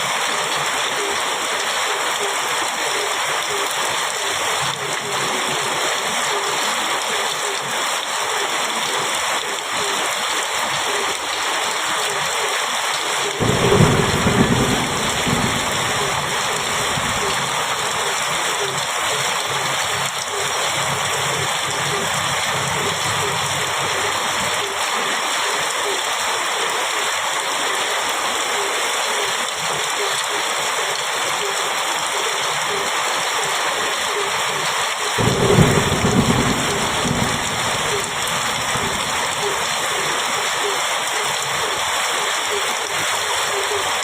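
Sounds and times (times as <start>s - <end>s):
heavy rain on a metal roof: 0.0s - 44.0s
thunder rolling: 13.4s - 17.6s, 35.2s - 39.5s.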